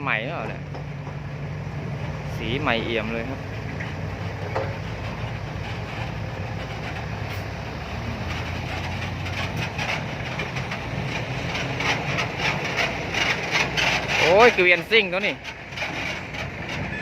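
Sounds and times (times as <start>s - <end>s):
diesel engine running: 0.0s - 17.0s
clicks and rattles: 8.3s - 17.0s.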